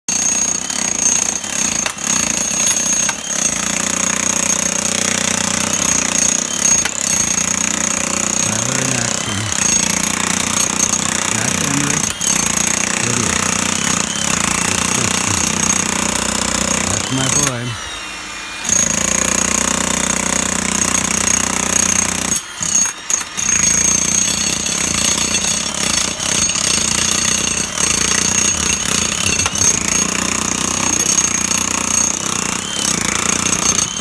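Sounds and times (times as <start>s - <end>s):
jackhammer breaking concrete: 0.1s - 17.9s, 18.6s - 34.0s.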